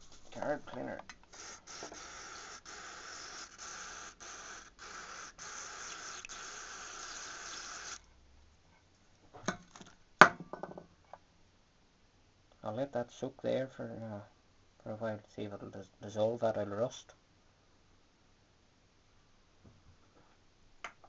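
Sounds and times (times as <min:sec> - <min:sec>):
aerosol spray hissing: 0:01.3 - 0:08.0.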